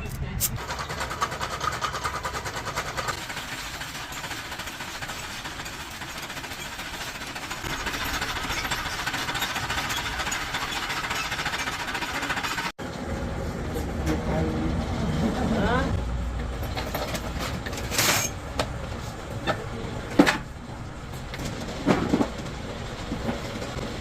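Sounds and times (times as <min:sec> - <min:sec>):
engine knocking: 0:00.6 - 0:12.7.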